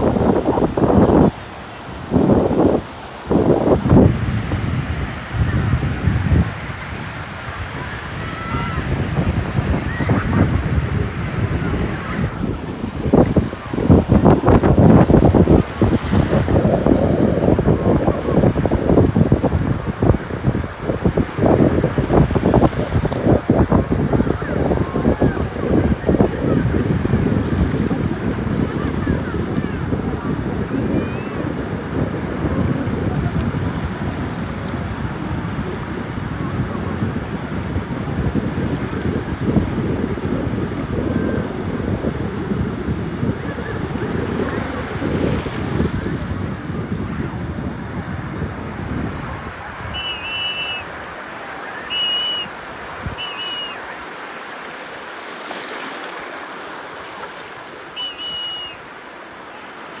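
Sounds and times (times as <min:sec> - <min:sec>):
ocean surf: 0:00.0 - 0:32.5, 0:33.1 - 1:00.0
wind buffeting microphone: 0:00.0 - 0:54.0
high whistled notes: 0:50.0 - 0:50.9, 0:51.8 - 0:52.5, 0:53.2 - 0:53.8, 0:58.0 - 0:58.8.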